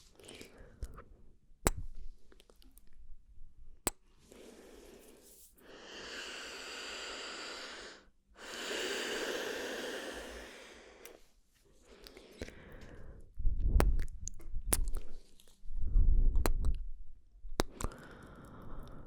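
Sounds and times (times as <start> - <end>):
breathy exhales: 4.3 - 11.2
mouth clicks: 13.6 - 15.2, 16.3 - 16.9, 17.5 - 19.0.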